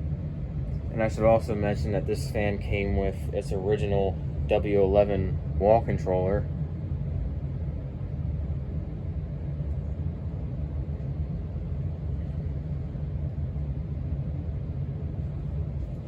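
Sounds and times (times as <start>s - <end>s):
ceiling fan running: 0.0s - 16.0s.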